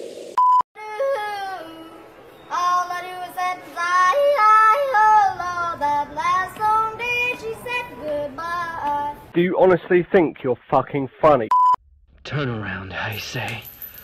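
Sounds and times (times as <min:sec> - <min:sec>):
child yodeling: 0:00.8 - 0:05.8.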